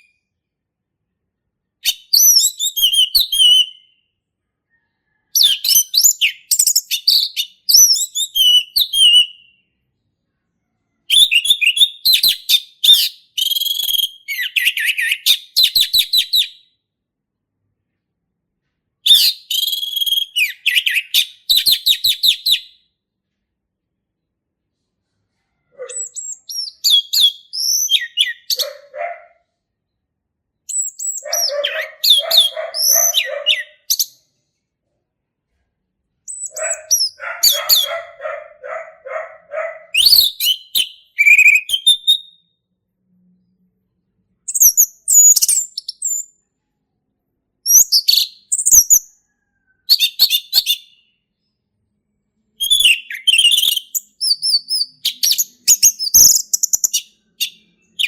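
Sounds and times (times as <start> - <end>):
bird singing whistled phrases: 1.8 - 4.0, 5.4 - 9.6, 11.1 - 16.6, 19.1 - 22.8, 25.8 - 28.8, 30.7 - 34.1, 36.3 - 38.0, 40.0 - 42.4, 52.6 - 57.6.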